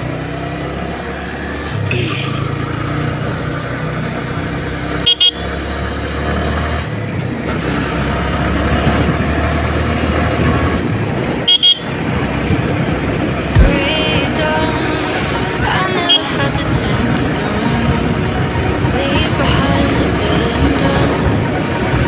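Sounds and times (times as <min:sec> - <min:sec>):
vehicle engine running: 0:00.0 - 0:22.0
vehicle horn double beeps: 0:01.9 - 0:02.5, 0:05.0 - 0:05.5, 0:11.5 - 0:11.9.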